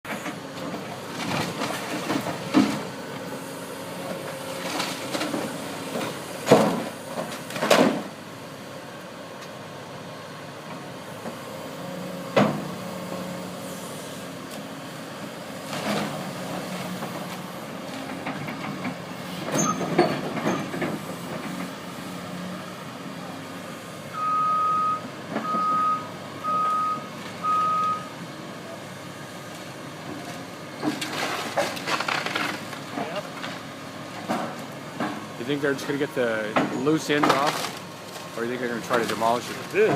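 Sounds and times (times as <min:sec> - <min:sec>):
diesel engine running: 0:00.0 - 0:39.9
vehicle reversing beeps: 0:24.1 - 0:28.2.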